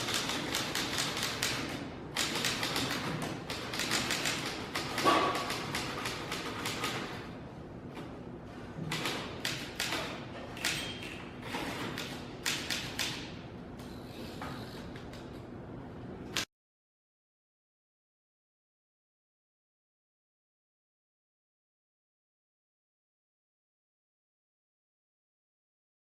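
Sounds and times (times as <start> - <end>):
typewriter typing: 0.0 - 7.2, 8.9 - 10.8, 11.6 - 13.3.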